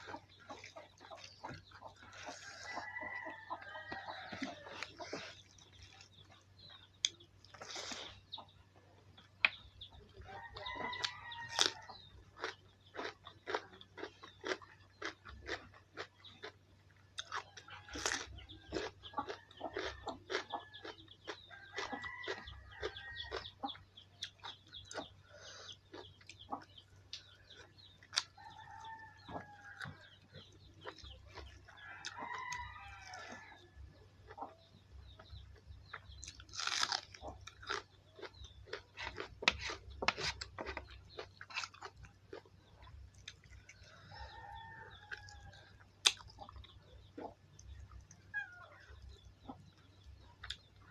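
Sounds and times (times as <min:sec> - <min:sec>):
chickens calling: 0:00.0 - 0:16.6, 0:17.3 - 0:50.9
chewing and crunching food: 0:00.0 - 0:50.9.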